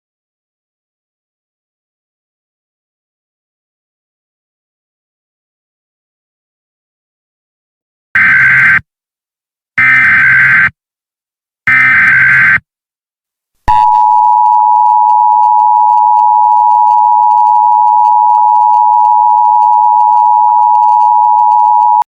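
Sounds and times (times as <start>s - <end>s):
data burst tones: 8.2s - 8.8s, 9.8s - 10.7s, 11.7s - 12.6s.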